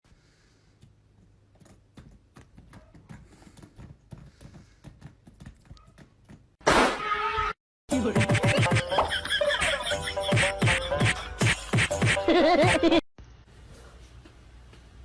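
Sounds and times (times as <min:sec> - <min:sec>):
loud music: 0:07.9 - 0:12.4.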